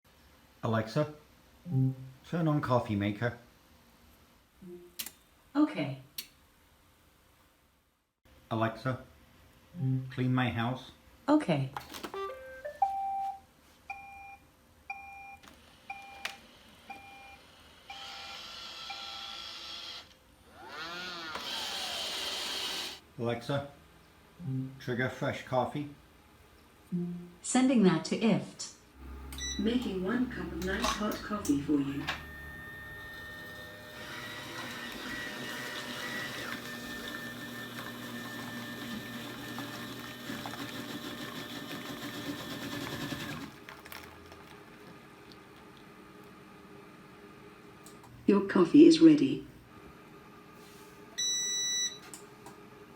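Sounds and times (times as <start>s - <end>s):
robot vacuum motor whirring: 17.9s - 23.0s, 32.2s - 43.5s
coffee maker brewing: 29.0s - 46.3s
short electronic beeps: 29.3s - 29.7s, 51.2s - 52.0s.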